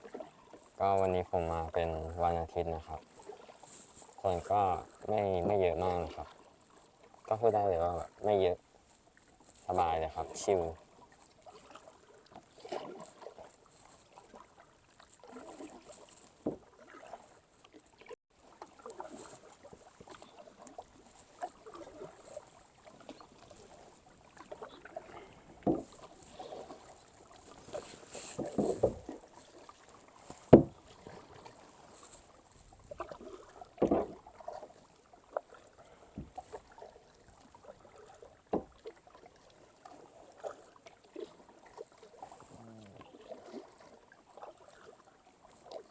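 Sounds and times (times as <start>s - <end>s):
paddles splashing in water: 0.0s - 45.9s
sharp knocks: 30.5s - 30.7s.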